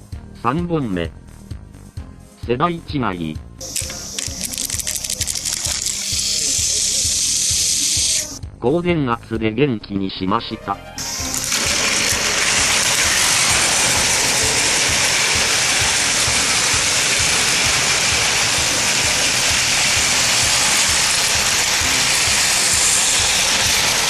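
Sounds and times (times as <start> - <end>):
toy train wheels clicking: 3.6 - 8.4, 11.0 - 24.0
whir of small electric motors: 3.6 - 8.4, 11.0 - 24.0.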